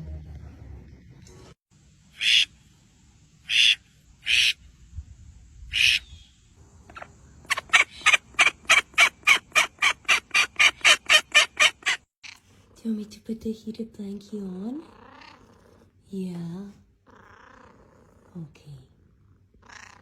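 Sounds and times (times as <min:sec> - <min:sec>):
bird screeching calls: 0:02.2 - 0:02.5, 0:03.5 - 0:04.6, 0:05.7 - 0:06.3, 0:07.0 - 0:12.0.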